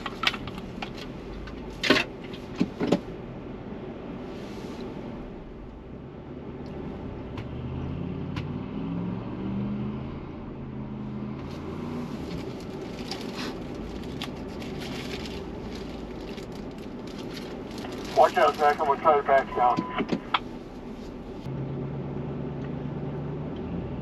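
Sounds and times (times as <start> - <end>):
vehicle engine revving: 5.2 - 15.7
low rumble: 10.1 - 23.6
tyres crunching over snow: 11.5 - 19.8.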